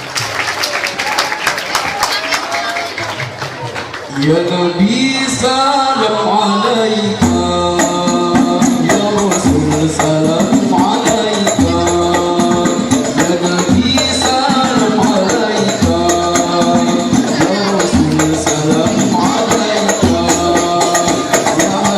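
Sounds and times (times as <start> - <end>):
voices singing: 4.2 - 21.9
frame drums: 4.9 - 21.9.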